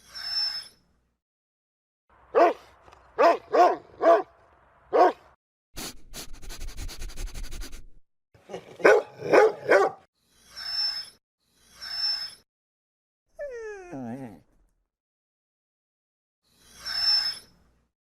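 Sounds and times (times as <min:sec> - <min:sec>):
dog barking: 0:02.3 - 0:04.3, 0:04.9 - 0:05.2, 0:08.5 - 0:10.1.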